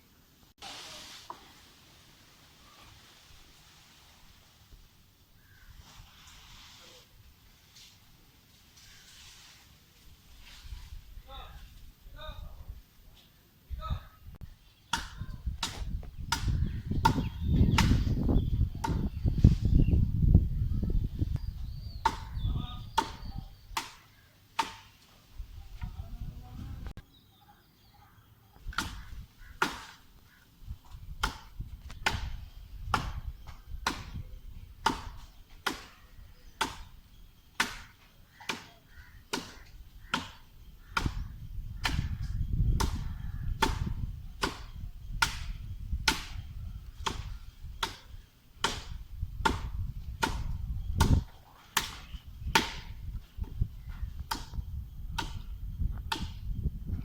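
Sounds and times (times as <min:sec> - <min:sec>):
blade chopping palm trunk: 0:14.9 - 0:18.1, 0:22.0 - 0:24.0, 0:24.6 - 0:25.0, 0:28.7 - 0:30.0, 0:31.1 - 0:34.2, 0:34.8 - 0:36.0, 0:36.6 - 0:37.0, 0:37.6 - 0:41.2, 0:41.8 - 0:46.4, 0:47.0 - 0:53.0, 0:54.2 - 0:55.5.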